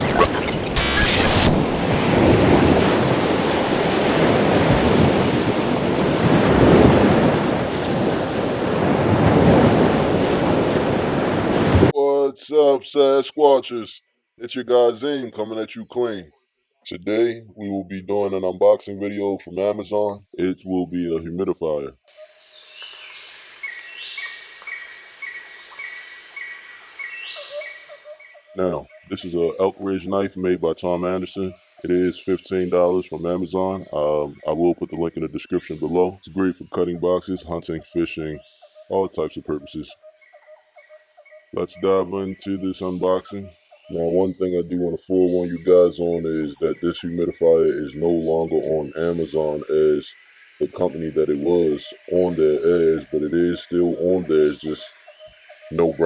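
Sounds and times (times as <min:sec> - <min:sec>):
rushing noise: 0:00.0 - 0:11.9.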